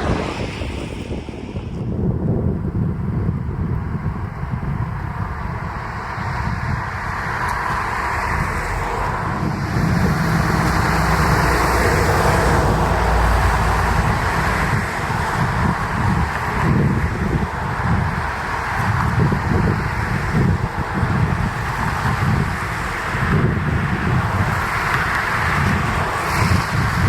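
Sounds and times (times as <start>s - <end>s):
diesel railcar engine: 0.0s - 27.0s
train wheels on rails: 6.8s - 27.0s.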